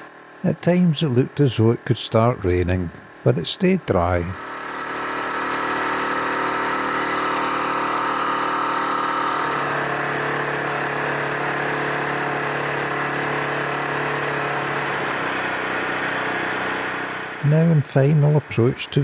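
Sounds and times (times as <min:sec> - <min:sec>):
outboard motor running: 0:04.0 - 0:18.7.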